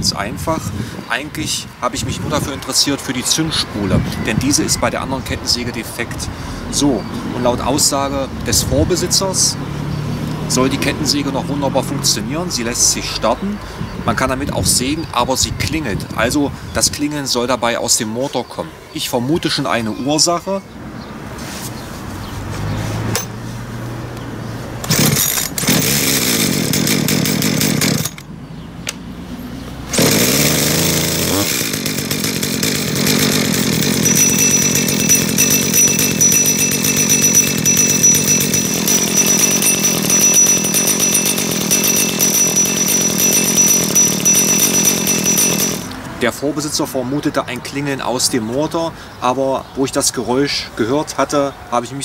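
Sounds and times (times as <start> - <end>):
high metallic ringing: 23.2 - 23.4, 24.8 - 28.3, 30.0 - 46.0
chainsaw idling: 24.8 - 28.4, 29.9 - 46.1.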